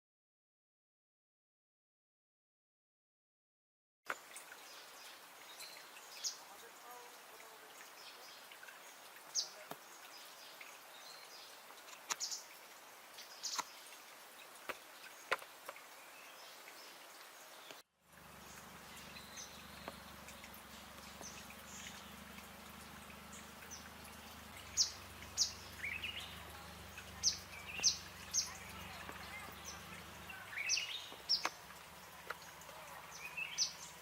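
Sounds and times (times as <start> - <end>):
low steady hum: 18.1 - 34.0.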